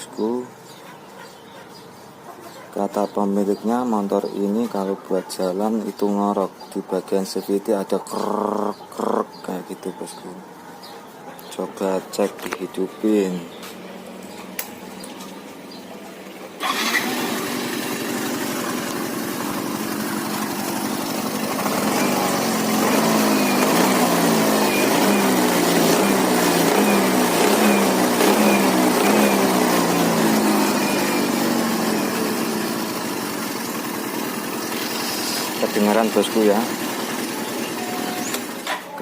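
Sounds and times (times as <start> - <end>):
scooter engine revving: 11.5 - 38.9.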